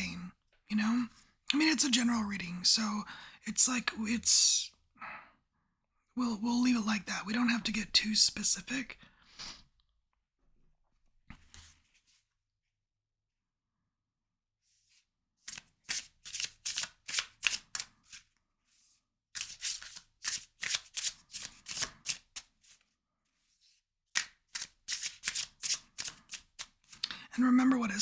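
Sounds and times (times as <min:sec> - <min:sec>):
cards being shuffled: 0:15.5 - 0:18.3, 0:19.4 - 0:22.8, 0:23.6 - 0:27.0.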